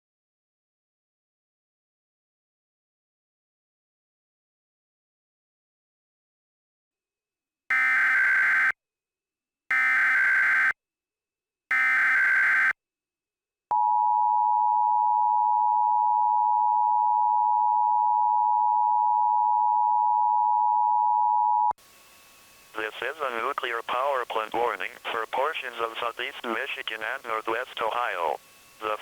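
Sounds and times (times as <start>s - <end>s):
digital header data bursts: 22.7s - 29.0s.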